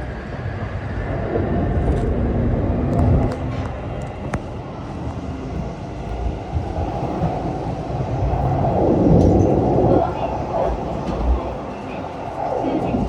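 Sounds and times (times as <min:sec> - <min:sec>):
train rumbling on rails: 0:00.0 - 0:13.0.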